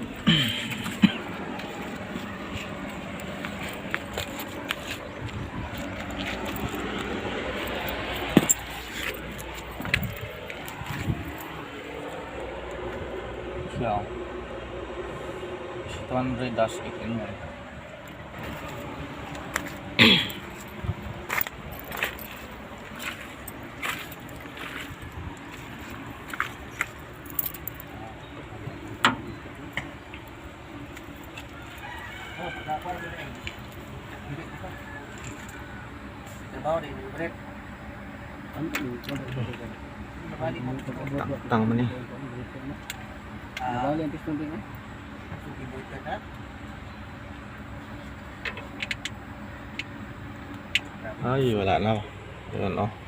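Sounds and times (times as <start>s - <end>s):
low background hum: 0.0s - 53.0s
steady background noise: 0.0s - 53.0s
metallic clicks and clinks: 27.2s - 27.9s.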